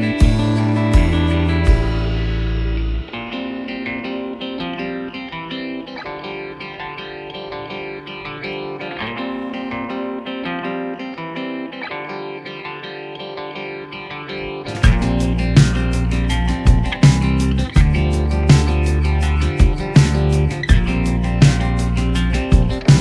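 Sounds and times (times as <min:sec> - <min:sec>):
guitar picking quick notes: 0:00.0 - 0:10.2.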